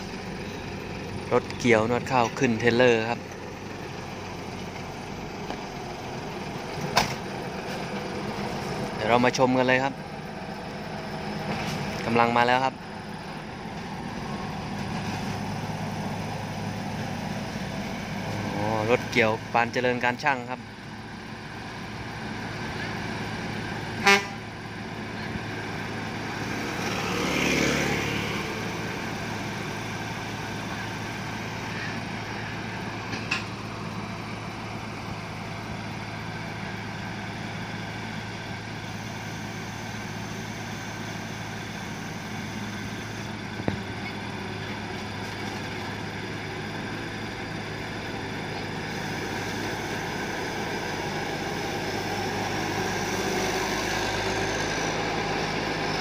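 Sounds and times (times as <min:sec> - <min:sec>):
harvester engine running: 0:00.0 - 0:56.0
short horn toot: 0:24.0 - 0:24.5.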